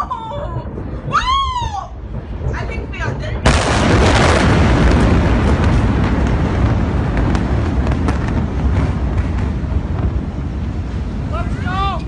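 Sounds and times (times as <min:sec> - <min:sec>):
deep explosion rumble: 0:00.0 - 0:12.0
sharp pops and crackles: 0:02.0 - 0:11.2.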